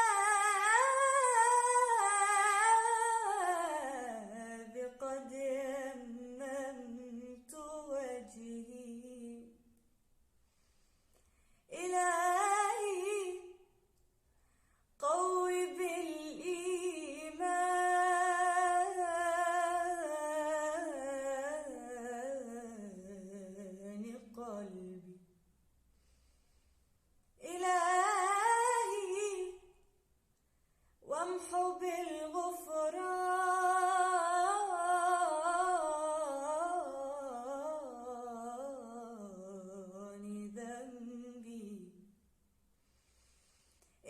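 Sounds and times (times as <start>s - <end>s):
girl singing a devotional chant: 0.0s - 9.4s, 11.7s - 13.5s, 15.0s - 25.2s, 27.4s - 29.7s, 31.0s - 42.0s.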